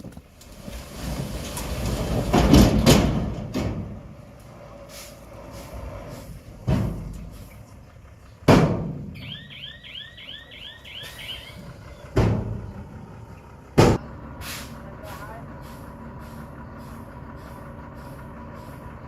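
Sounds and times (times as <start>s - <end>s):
low machinery rumble: 0.0s - 19.0s
sharp metallic bangs: 8.4s - 9.4s
high chirps: 9.2s - 12.2s.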